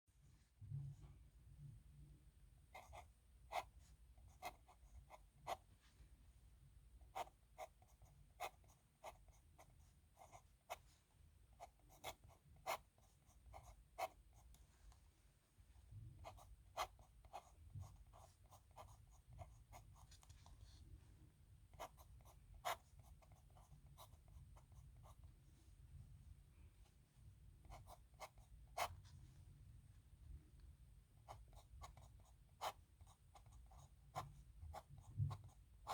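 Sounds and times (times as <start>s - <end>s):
low steady hum: 0.1s - 35.9s
pen scratching on paper: 2.7s - 5.6s, 7.1s - 10.9s, 11.6s - 14.5s, 16.2s - 20.8s, 21.7s - 25.3s, 27.6s - 29.1s, 31.2s - 35.9s.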